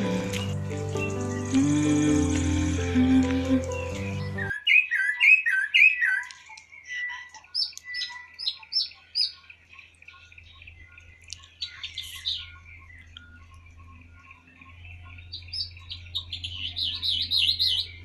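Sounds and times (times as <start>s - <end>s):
birds chirping: 0.0s - 18.0s
birds singing: 0.0s - 18.0s.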